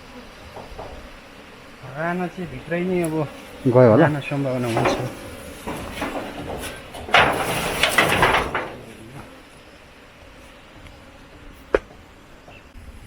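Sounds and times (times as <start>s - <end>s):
rustling and handling noise: 2.3s - 9.6s.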